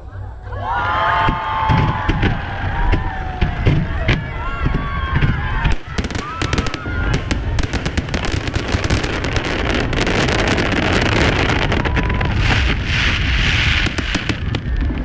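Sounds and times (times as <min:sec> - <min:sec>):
fireworks rumble: 0:00.0 - 0:15.0
fireworks popping and crackling: 0:01.0 - 0:15.0.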